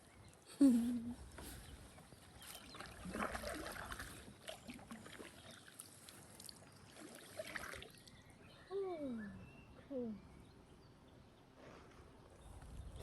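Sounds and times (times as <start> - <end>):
paddle blades dipping in water: 1.3 - 8.1
water trickling: 2.3 - 8.4.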